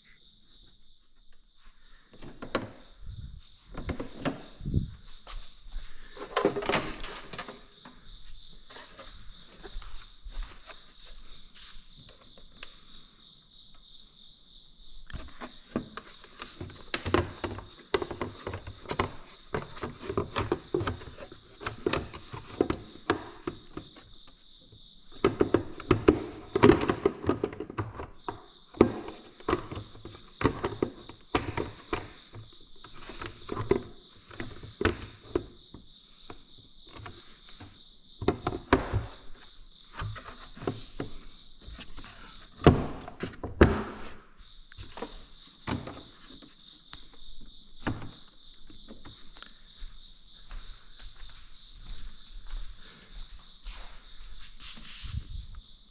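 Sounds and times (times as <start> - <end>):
crickets chirring: 0.0 - 55.9
knocks and clatter of tools: 6.0 - 8.0, 15.1 - 24.1, 25.1 - 35.8.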